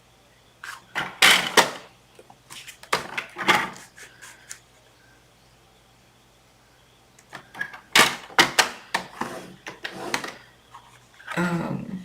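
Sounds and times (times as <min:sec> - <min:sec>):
cardstock scraping and tapping: 0:08.4 - 0:11.0.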